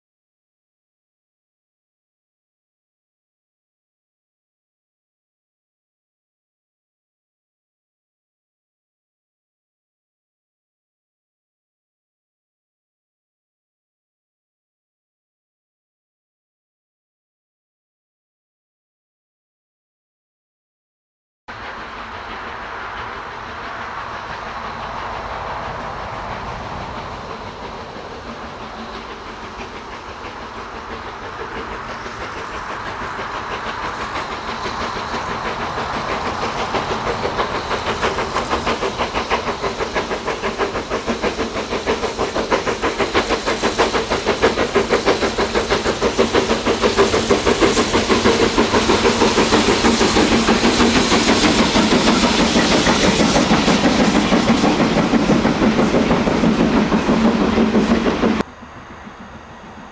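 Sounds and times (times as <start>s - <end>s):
steam hiss: 21.5s - 59.9s
steam locomotive working hard: 21.5s - 59.9s.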